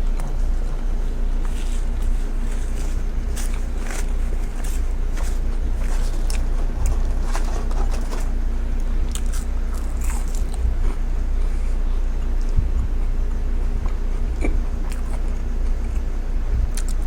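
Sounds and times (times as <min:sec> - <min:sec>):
chewing and biting a burger: 0:00.0 - 0:17.0
steady low hum: 0:00.0 - 0:17.0
crisp crunchy clicks: 0:01.4 - 0:10.6, 0:16.7 - 0:17.0.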